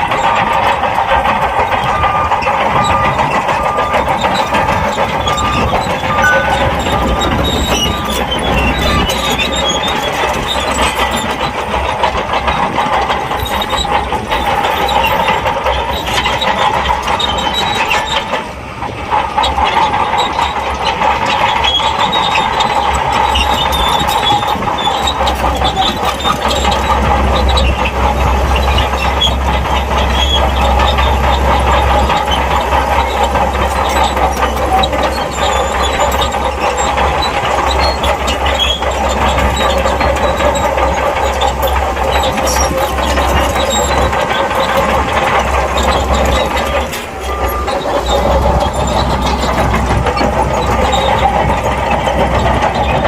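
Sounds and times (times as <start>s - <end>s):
bulldozer diesel engine under load: 0.0s - 53.0s
metallic clanking: 5.2s - 9.1s.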